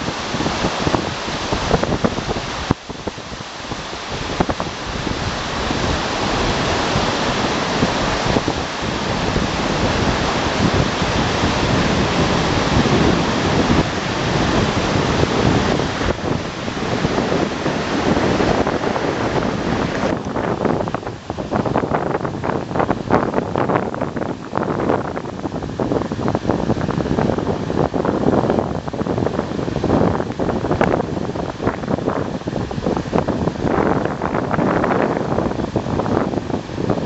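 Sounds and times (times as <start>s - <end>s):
rain: 0.0s - 37.0s
water rushing: 0.0s - 37.0s.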